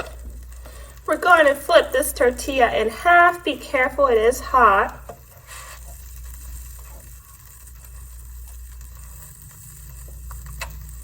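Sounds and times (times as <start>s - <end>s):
faint hiss: 0.0s - 11.0s
low electrical hum: 0.0s - 11.0s.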